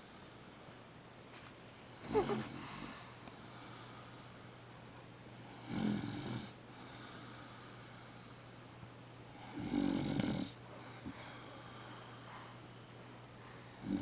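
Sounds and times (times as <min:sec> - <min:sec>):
soft breathing: 0:02.1 - 0:04.6, 0:06.7 - 0:08.6, 0:10.7 - 0:13.7
woman snoring: 0:05.5 - 0:06.5, 0:09.4 - 0:10.6, 0:13.8 - 0:14.0.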